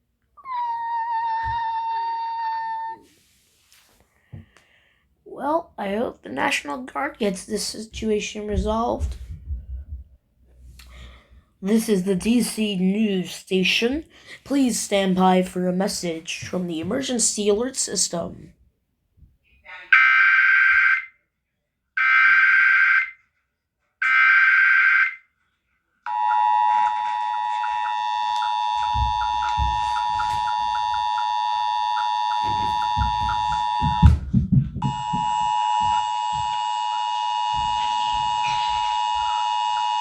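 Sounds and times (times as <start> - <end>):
low thumps: 28.8 - 31.0, 32.4 - 36.6
steady two-tone alert signal: 34.8 - 40.0.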